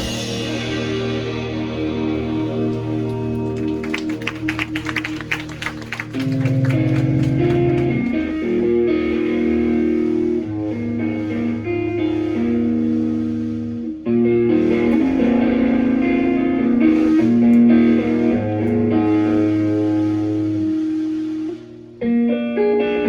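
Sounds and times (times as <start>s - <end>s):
instrumental band music: 0.0s - 8.3s
guitar strumming: 0.0s - 23.0s.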